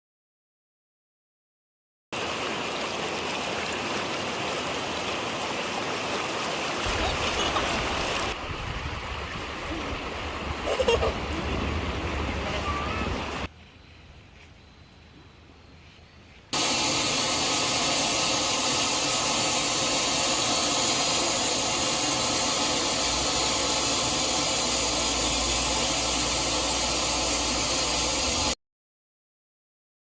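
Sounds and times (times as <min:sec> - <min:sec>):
stream water rushing: 0:02.2 - 0:13.5, 0:16.6 - 0:28.6.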